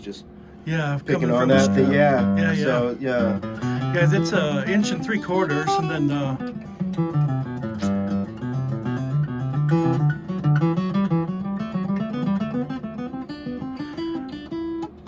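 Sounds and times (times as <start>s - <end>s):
acoustic guitar picked notes: 1.1s - 15.0s.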